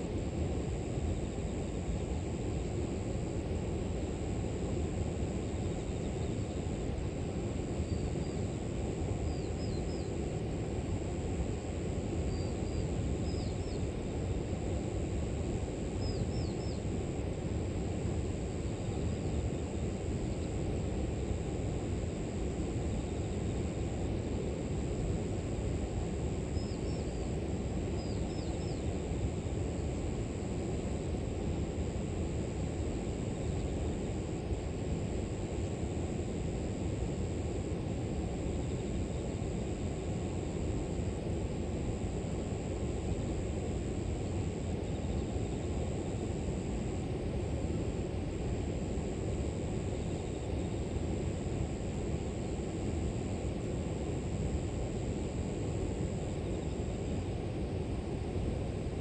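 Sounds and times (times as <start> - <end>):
insects trilling: 0.0 - 58.1.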